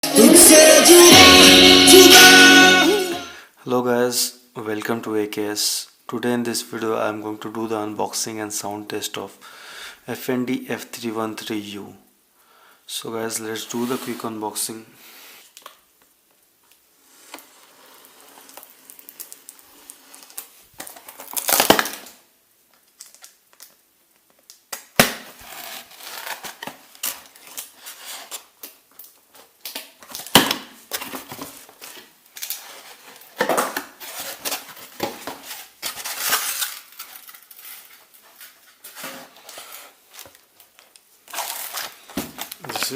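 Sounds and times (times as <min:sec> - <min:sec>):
packaging crinkling and rustling: 0:15.5 - 0:42.9.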